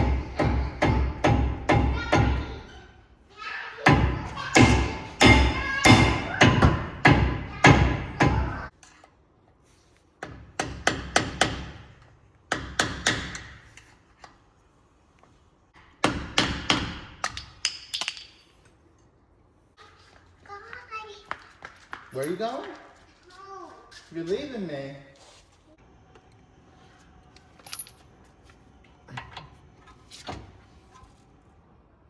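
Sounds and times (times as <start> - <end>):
hammer blows on metal: 3.9 - 8.5.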